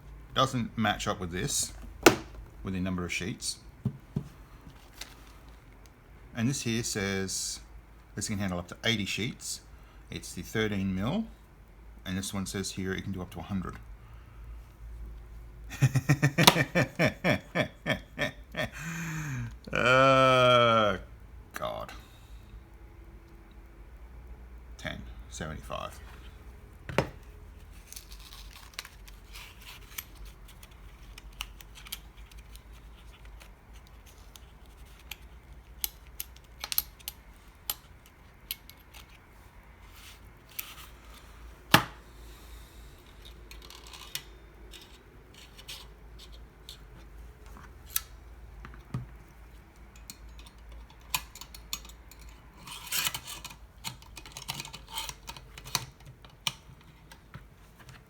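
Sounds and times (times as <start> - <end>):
stapler metal clicks and rubbing: 50.0 - 57.2.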